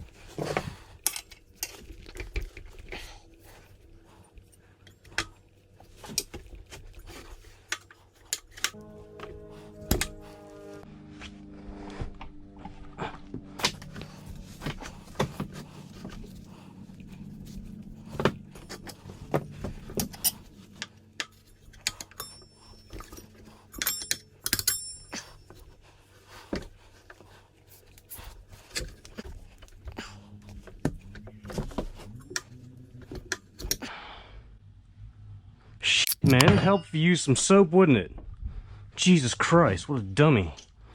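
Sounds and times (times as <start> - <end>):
steady low hum: 0.0 - 40.9
ringing metal tones: 8.7 - 10.8, 19.7 - 25.8, 36.3 - 37.2.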